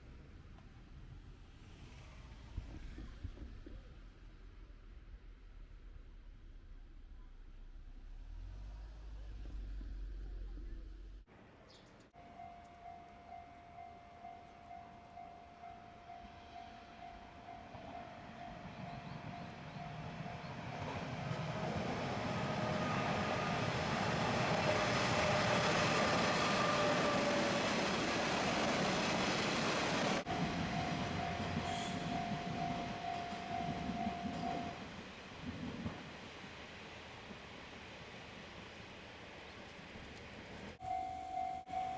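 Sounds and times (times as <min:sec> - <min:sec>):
diesel train passing rumble: 0:00.0 - 0:41.9
level-crossing bell ringing: 0:30.7 - 0:34.8, 0:40.8 - 0:41.9.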